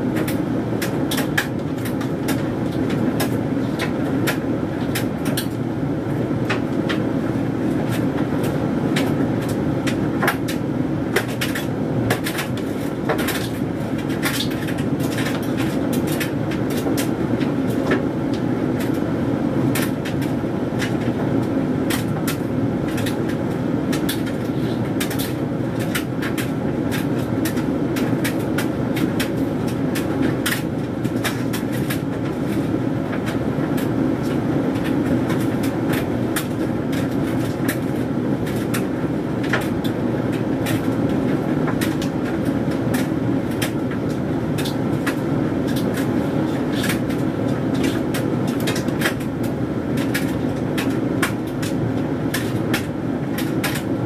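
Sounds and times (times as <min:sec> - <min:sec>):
tumble dryer humming: 0:00.0 - 0:54.0
clothes tumbling clicks: 0:50.0 - 0:54.0.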